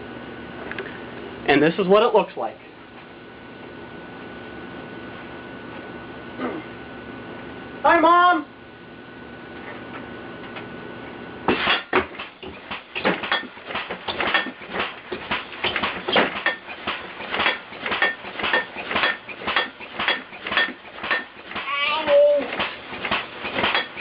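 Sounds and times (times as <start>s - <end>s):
alarm bed clattering and banging: 11.5s - 24.0s.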